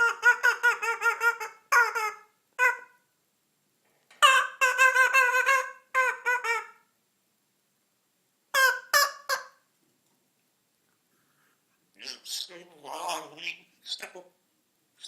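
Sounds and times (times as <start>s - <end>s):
parrot calling: 0.0s - 3.1s, 4.2s - 6.9s, 8.5s - 9.7s, 12.0s - 14.2s.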